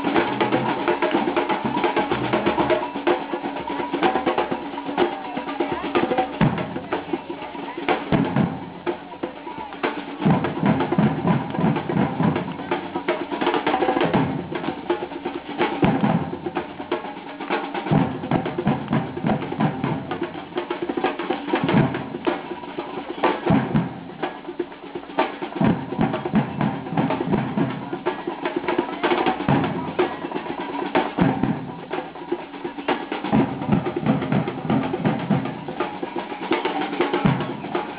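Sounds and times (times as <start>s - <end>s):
percussion ensemble drumming: 0.0s - 37.9s
bass drum beats: 5.6s - 13.1s, 13.8s - 17.0s, 17.7s - 22.6s, 33.2s - 36.0s.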